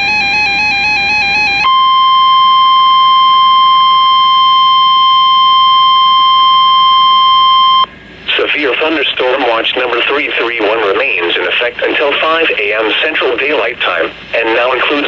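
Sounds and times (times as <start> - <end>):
steady warning alarm tone: 0.0 - 7.9.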